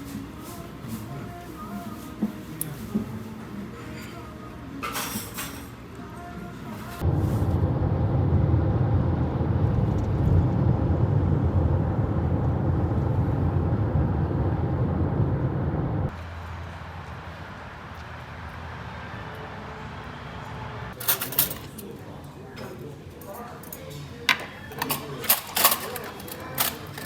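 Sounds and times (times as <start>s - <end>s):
quiet hum: 5.9s - 16.1s
low rumbling noise: 7.0s - 19.6s.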